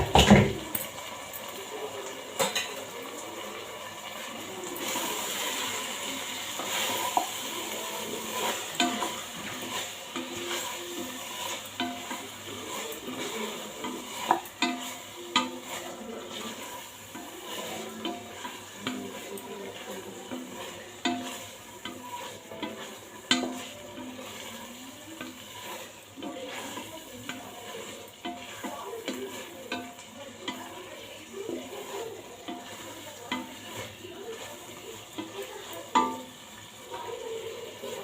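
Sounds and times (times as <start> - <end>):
spoon knocking against pot: 0.0 - 0.7
faint frying sizzle: 0.0 - 38.0.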